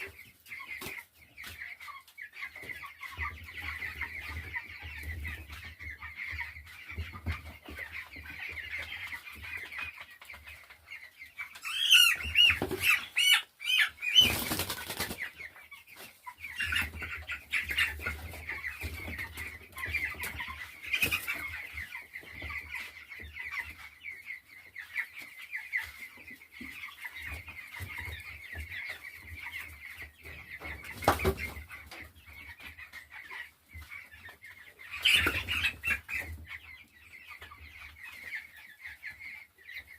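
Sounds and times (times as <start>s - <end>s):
chicks peeping: 0.0s - 39.9s
wings flapping: 14.2s - 15.2s.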